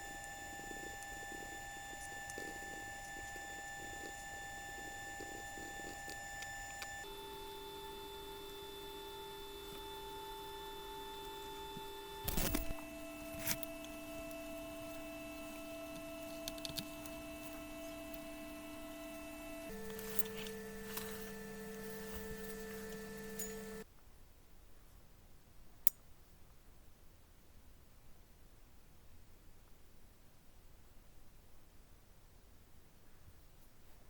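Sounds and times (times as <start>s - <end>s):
electronic humming tones: 0.0s - 23.8s.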